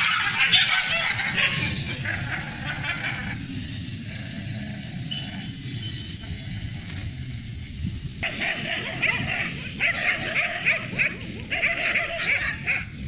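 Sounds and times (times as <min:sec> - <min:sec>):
dog yips and whimpers: 0:00.0 - 0:03.4, 0:08.2 - 0:13.0.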